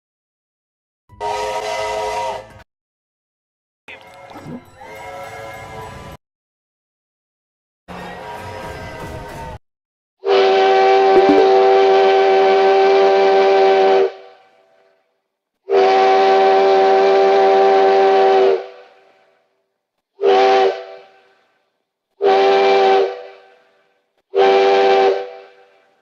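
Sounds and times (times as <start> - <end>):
steam locomotive chime whistle: 1.1 - 2.5.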